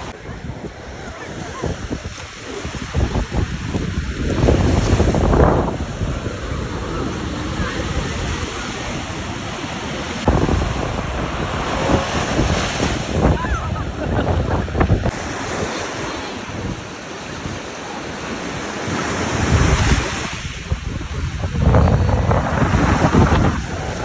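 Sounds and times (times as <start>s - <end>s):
wind buffeting microphone: 0.0s - 15.4s, 19.2s - 24.0s
waves washing onto shore: 0.0s - 24.0s.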